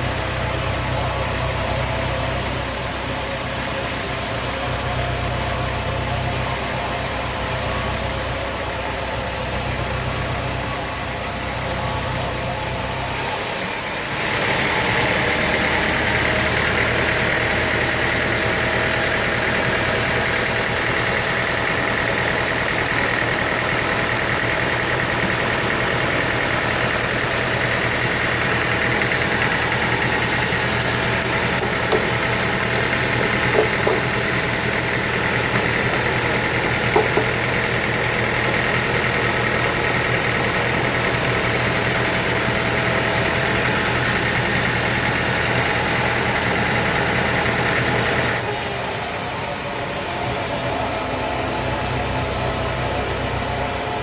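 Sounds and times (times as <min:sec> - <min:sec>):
sawmill machinery hum and whine: 0:00.0 - 0:54.0
brief knocks: 0:35.5 - 0:37.5.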